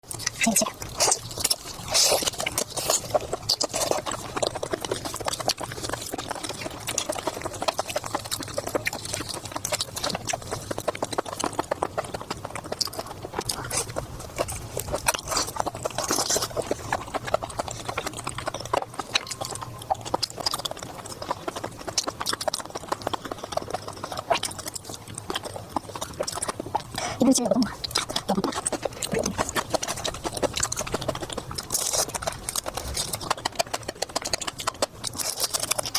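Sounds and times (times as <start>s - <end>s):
chewing with wet mouth clicks: 0.0s - 35.9s.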